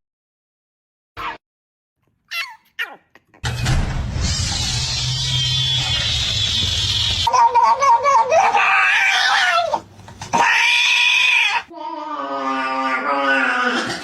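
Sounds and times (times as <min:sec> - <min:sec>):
cat meowing loudly: 0:08.5 - 0:09.8, 0:10.4 - 0:11.7.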